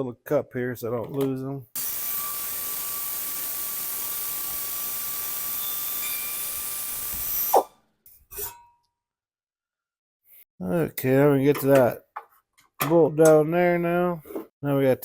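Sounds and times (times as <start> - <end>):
power ratchet whining: 1.8 - 7.6.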